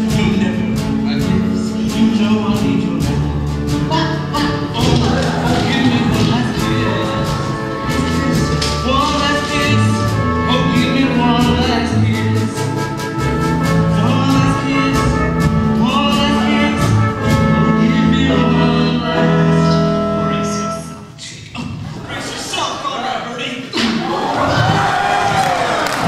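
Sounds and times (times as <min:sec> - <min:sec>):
drum or cymbal hits: 0:00.0 - 0:17.4
live pit band music: 0:00.0 - 0:22.8.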